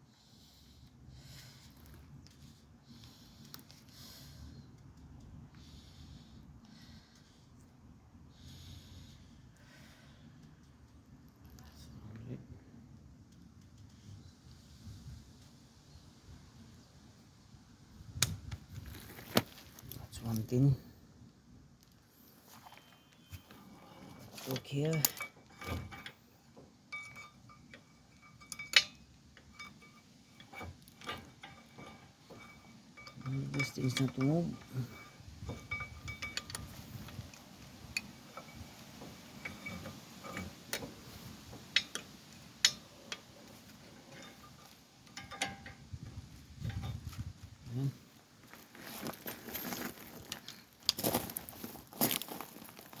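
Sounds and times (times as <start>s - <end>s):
metal tools clinking: 22.5s - 26.2s, 26.9s - 45.8s, 48.5s - 53.0s.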